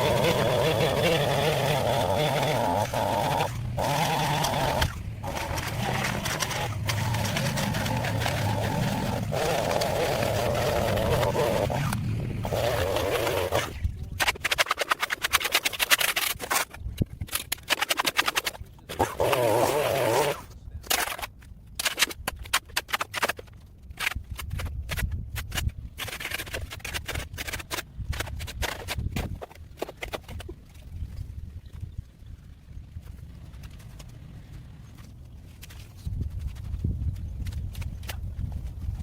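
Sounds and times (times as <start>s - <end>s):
string trimmer engine whining: 0.0s - 13.8s, 18.9s - 20.5s
sharp clicks knocks and scrapes: 0.0s - 19.4s, 20.8s - 30.9s, 33.0s - 39.0s.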